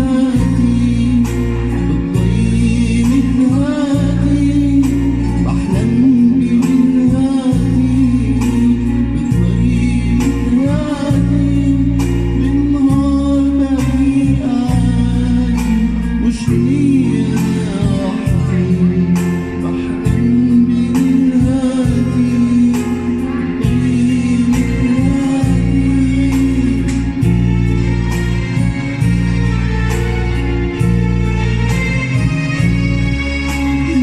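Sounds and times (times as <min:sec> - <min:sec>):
man singing ornamented melody: 0:00.0 - 0:27.3
sustained bass notes: 0:00.0 - 0:34.0.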